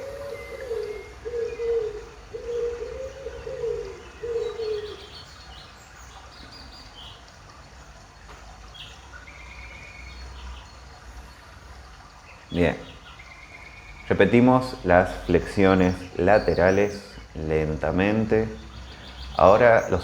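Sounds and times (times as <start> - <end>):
dove cooing: 0.0 - 5.3
small birds chirping faintly: 0.0 - 20.0.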